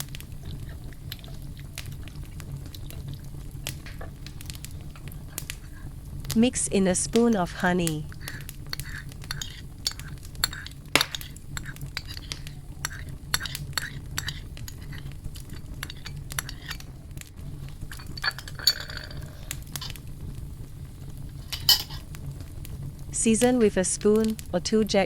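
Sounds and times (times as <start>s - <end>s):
low steady hum: 0.0s - 25.0s
utensil clinking against bowl: 8.2s - 16.9s, 17.9s - 19.9s, 21.6s - 22.0s.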